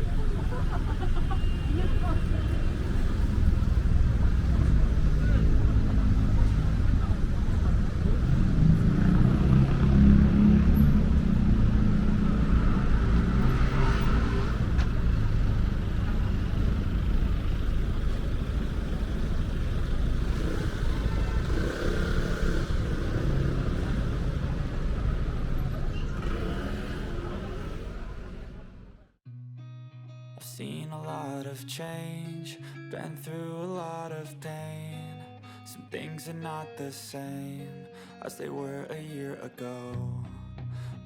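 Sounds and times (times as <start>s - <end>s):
car traffic rumble: 0.0s - 29.2s
faint voices: 0.0s - 29.2s.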